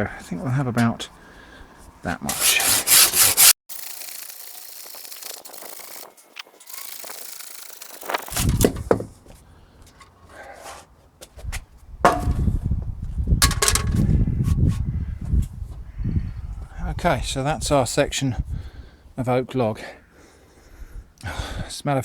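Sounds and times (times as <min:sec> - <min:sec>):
hand saw rasping through log: 0:02.3 - 0:05.6
wood knocking and rumbling: 0:08.4 - 0:09.2.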